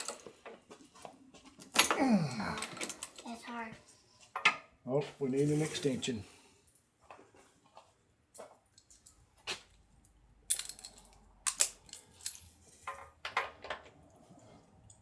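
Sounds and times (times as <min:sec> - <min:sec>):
metal hand tools clinking: 0:10.5 - 0:13.1.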